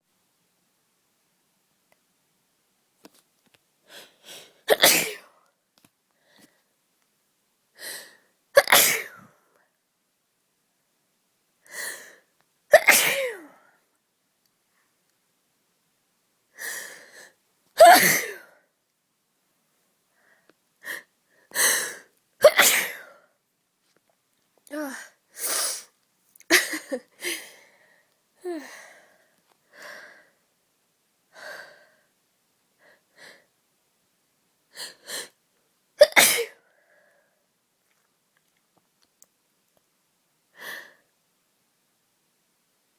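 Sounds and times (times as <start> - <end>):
person sneezing: 4.7 - 5.3, 8.6 - 9.2, 12.7 - 13.5, 17.8 - 18.5, 22.4 - 23.1, 36.0 - 36.6.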